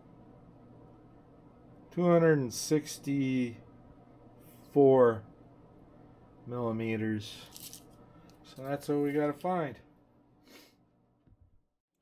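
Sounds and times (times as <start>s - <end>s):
low steady hum: 0.0s - 11.7s
man speaking: 4.7s - 5.3s, 8.5s - 9.8s.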